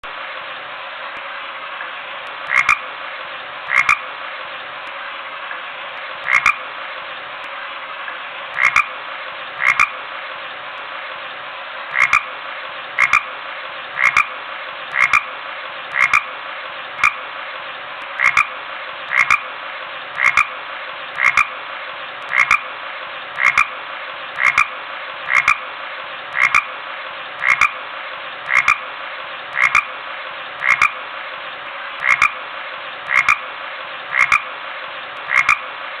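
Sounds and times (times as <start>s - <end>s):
constant hiss: 0.0s - 36.0s
dog making croaking sounds: 2.5s - 2.8s, 3.7s - 4.0s, 6.2s - 6.6s, 8.6s - 8.9s, 9.6s - 9.9s, 11.9s - 12.3s, 14.0s - 14.3s, 14.9s - 15.3s, 15.9s - 16.3s, 19.1s - 19.4s, 20.2s - 20.5s, 21.2s - 21.5s, 22.3s - 22.6s, 23.4s - 23.7s, 24.4s - 24.7s, 25.3s - 25.6s, 26.3s - 26.6s, 27.4s - 27.7s, 28.5s - 28.8s, 29.6s - 29.9s, 30.6s - 31.0s, 32.0s - 32.4s, 33.1s - 33.4s, 34.1s - 34.4s, 35.3s - 35.6s.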